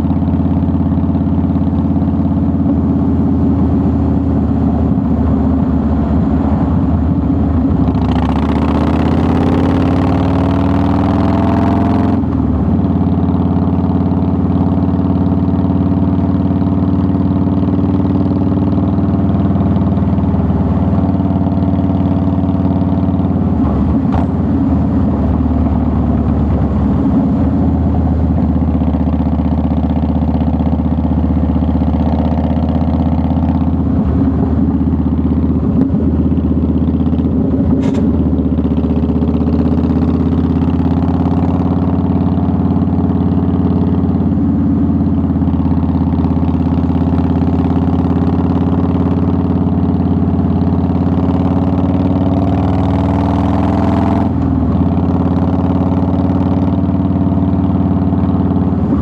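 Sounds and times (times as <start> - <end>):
motorcycle engine running: 0.0 - 59.0
sharp click: 37.8 - 38.1.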